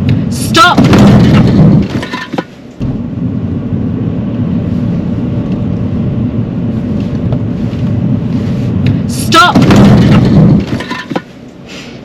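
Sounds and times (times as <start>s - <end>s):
engine and road noise rumble: 0.0s - 12.0s.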